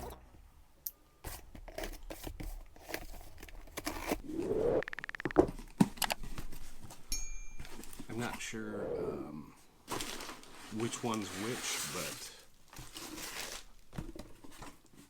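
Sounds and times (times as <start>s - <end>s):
package rustling and crinkling: 9.9s - 15.0s.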